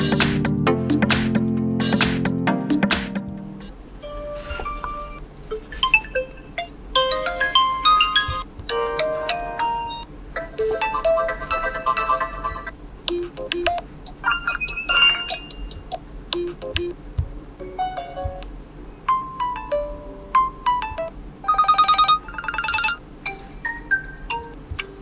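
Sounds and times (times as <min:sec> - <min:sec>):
electronic alarm melodies: 0:05.8 - 0:15.8, 0:20.8 - 0:23.0.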